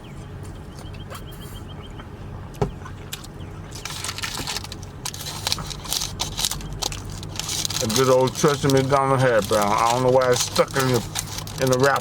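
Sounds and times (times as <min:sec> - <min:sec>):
paper wrapper crinkling: 0:03.7 - 0:12.0.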